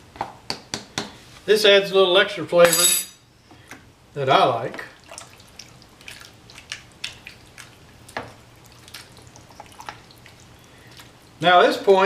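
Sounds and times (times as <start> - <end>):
faint steady hum: 0.0 - 12.0
utensil stirring thick wet mixture: 5.0 - 11.2.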